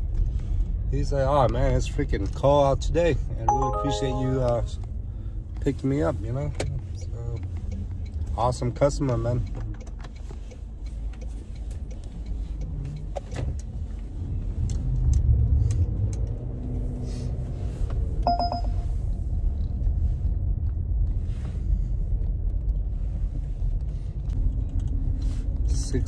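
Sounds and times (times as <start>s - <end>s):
short electronic beep: 3.5s - 4.7s, 18.3s - 18.9s
car road noise rumble: 4.8s - 26.0s.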